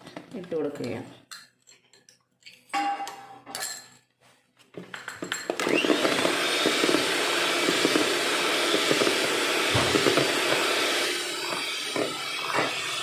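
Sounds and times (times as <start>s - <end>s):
electric mixer whirring: 5.5s - 13.0s.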